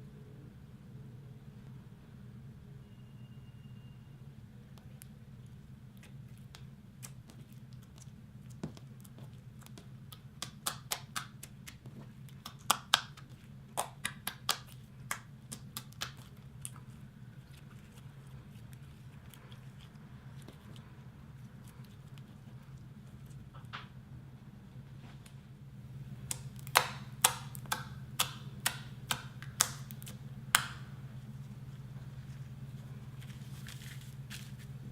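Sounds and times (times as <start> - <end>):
steady low hum: 0.0 - 34.9
slime clicking and popping: 26.3 - 30.8.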